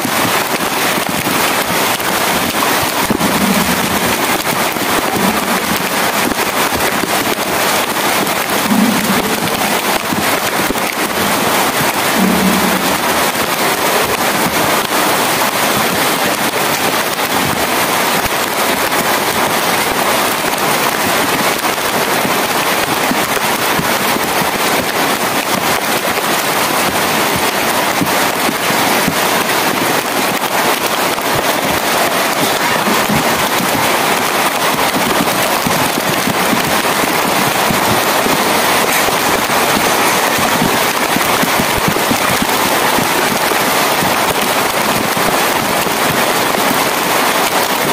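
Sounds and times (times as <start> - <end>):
heavy rain falling: 0.0 - 47.9.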